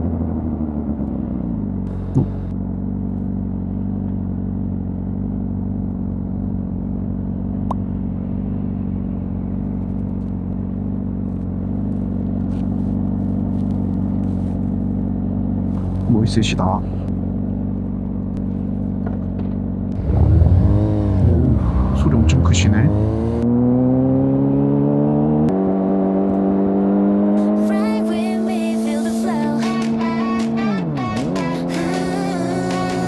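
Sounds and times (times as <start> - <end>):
motorcycle engine idling: 0.0 - 21.5.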